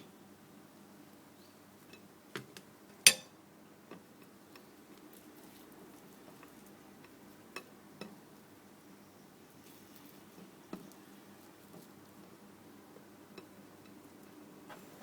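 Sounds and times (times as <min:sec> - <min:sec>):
kitchenware clicks and knocks: 0:02.4 - 0:03.3.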